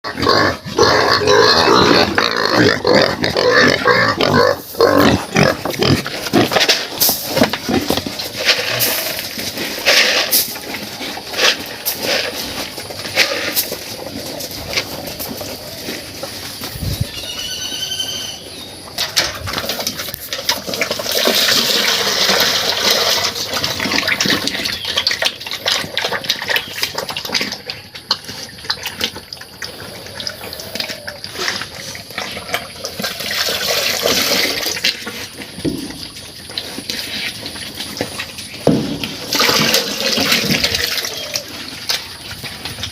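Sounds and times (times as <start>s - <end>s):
short high-pitched call: 17.1s - 18.4s.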